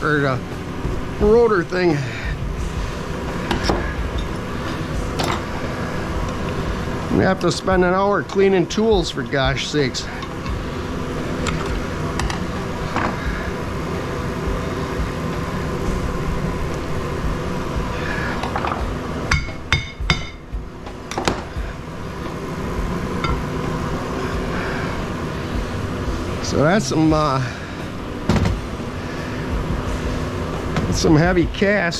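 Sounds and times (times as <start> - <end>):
steady background noise: 0.0 - 31.9
hammer strikes on metal housing: 19.3 - 20.4.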